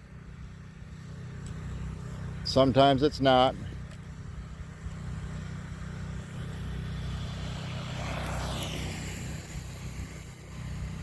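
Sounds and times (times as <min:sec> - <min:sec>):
steady low hum: 0:00.0 - 0:11.0
rc car electric motor whining: 0:04.8 - 0:11.0.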